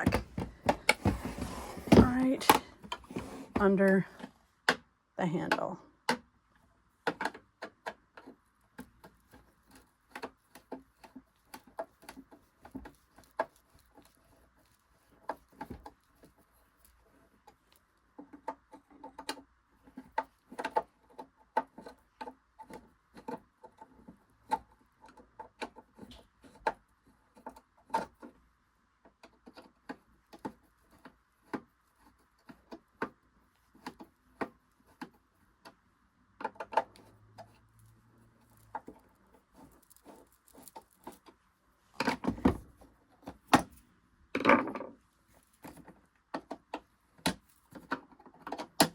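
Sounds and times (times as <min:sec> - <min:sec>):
casing being handled: 0:00.0 - 0:04.3.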